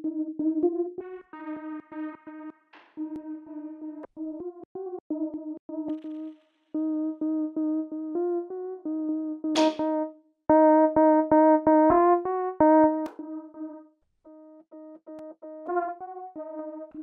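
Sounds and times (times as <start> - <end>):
synthesizer staccato notes: 9.6 - 13.8, 15.2 - 17.0.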